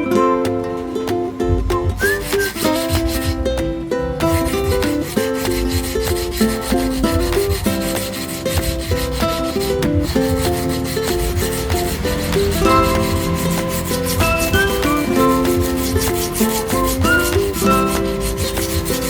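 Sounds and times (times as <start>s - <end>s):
background music with held notes: 0.0s - 19.0s
knife scraping on sharpener: 4.4s - 19.0s.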